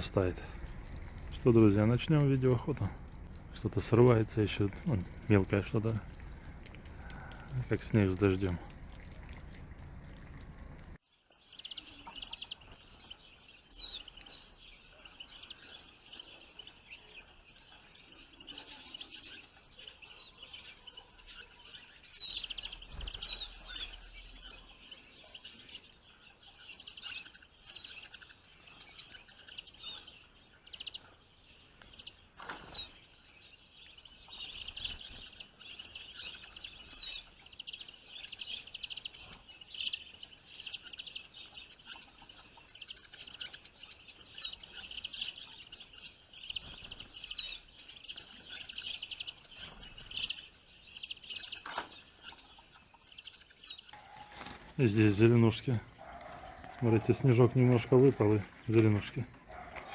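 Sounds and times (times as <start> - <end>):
finches twittering and chirping: 0.0 - 10.9.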